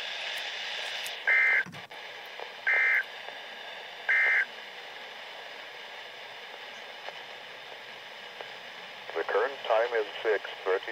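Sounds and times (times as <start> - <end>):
faint radio hiss: 0.0 - 10.9
two-tone data bursts: 1.3 - 1.7, 2.7 - 3.0, 4.1 - 4.5.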